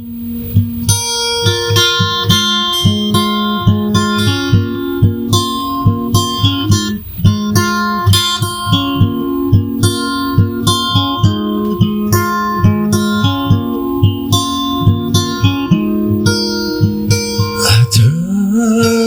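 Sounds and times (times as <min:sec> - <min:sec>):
acoustic guitar strumming: 0:00.0 - 0:19.0
low thump on beat: 0:10.4 - 0:17.5.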